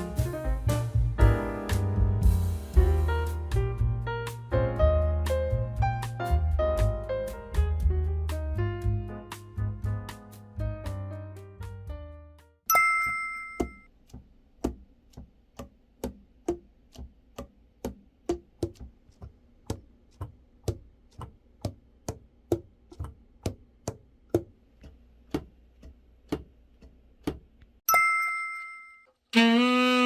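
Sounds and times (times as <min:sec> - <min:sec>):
bright chime ding: 0:12.7 - 0:13.9, 0:27.9 - 0:29.1.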